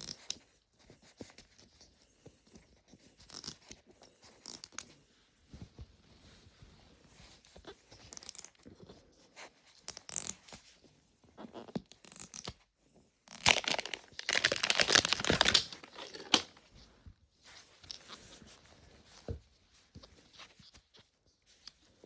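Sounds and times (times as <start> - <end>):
plastic packaging tearing: 13.3 - 16.6
plastic crinkling: 13.3 - 16.7.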